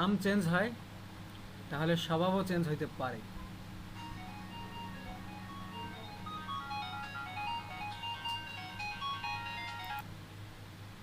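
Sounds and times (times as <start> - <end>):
simple electronic tune: 4.0 - 10.0.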